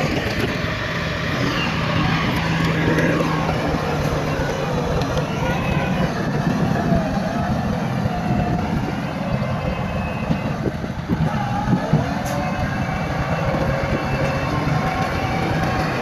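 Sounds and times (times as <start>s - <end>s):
heavy diesel engine rumble: 0.0s - 16.0s.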